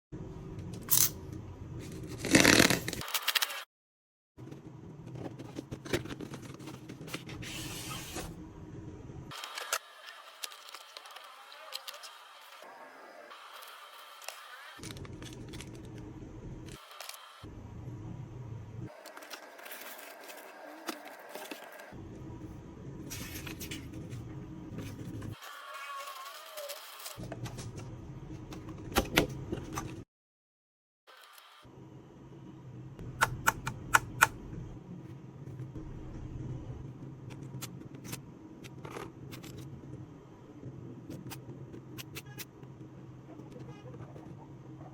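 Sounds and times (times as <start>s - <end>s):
low background hum: 14.7s - 25.4s, 31.7s - 44.9s
low hum: 31.7s - 38.7s.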